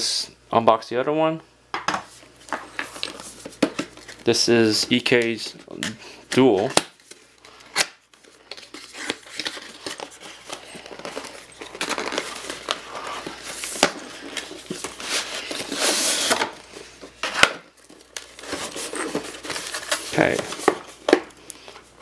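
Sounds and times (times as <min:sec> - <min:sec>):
wrapping crinkling and tearing: 0:02.9 - 0:04.5, 0:06.7 - 0:22.0
box being opened: 0:08.5 - 0:16.6.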